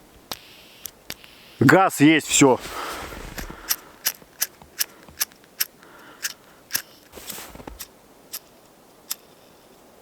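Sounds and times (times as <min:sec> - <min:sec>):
lighter flint wheel clicks: 0:03.7 - 0:07.1.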